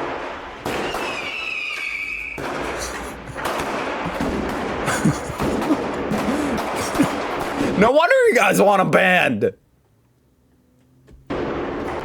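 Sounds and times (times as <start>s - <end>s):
firework whistle: 0.0s - 4.4s
firework bangs: 0.0s - 8.1s
fireworks crackling: 0.0s - 9.5s.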